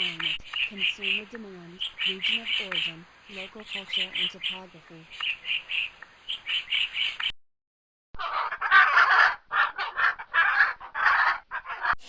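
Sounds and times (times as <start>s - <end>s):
chickens clucking and cackling: 0.0s - 7.3s, 8.2s - 12.0s
rapid high chirps: 0.0s - 7.3s.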